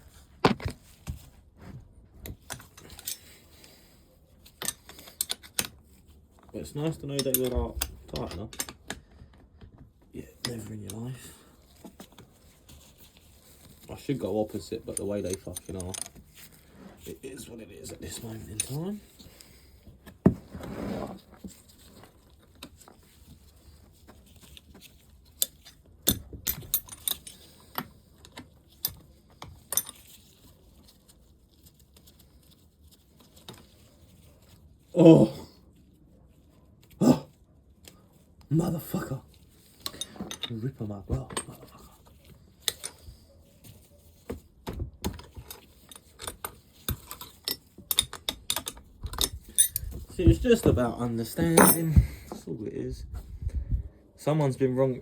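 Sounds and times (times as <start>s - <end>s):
metal tools clinking: 2.5s - 3.4s, 6.9s - 8.7s, 14.5s - 16.4s, 17.8s - 18.8s, 39.8s - 41.9s, 45.3s - 50.7s, 51.3s - 52.1s.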